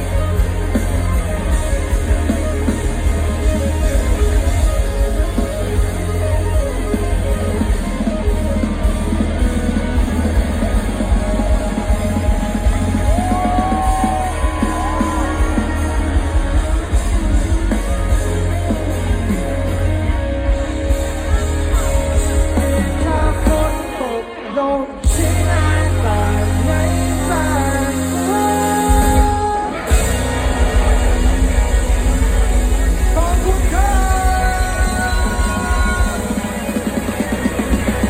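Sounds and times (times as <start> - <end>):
live rock band: 0.0 - 38.0
person singing: 21.6 - 30.3, 33.0 - 37.0.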